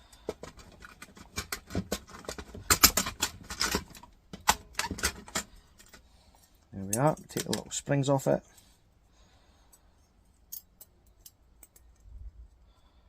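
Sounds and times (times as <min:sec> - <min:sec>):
small metal parts clinking: 0:00.1 - 0:07.6, 0:09.7 - 0:12.1.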